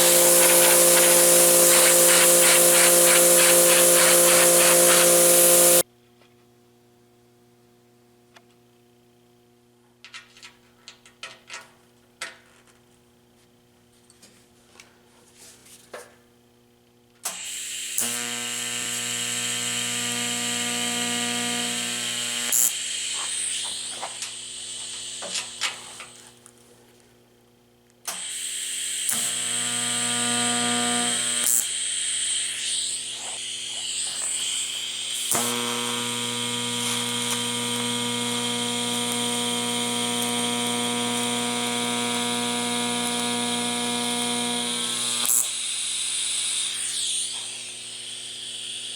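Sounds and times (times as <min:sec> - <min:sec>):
power tool motor humming: 0:00.0 - 0:05.8, 0:17.3 - 0:26.4, 0:28.1 - 0:48.9.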